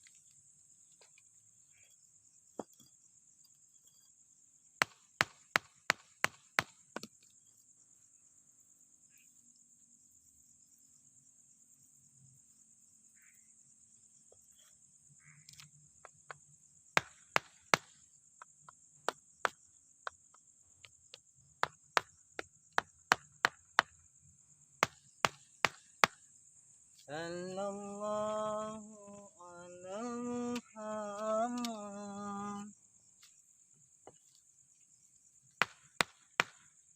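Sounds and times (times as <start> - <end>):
night insects chirring: 0.0 - 36.9
mallet knocking paving blocks: 4.8 - 7.2, 16.0 - 24.0.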